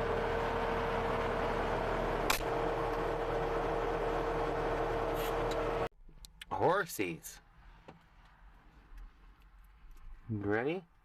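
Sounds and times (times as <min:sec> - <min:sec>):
machine engine drone: 0:00.0 - 0:05.9.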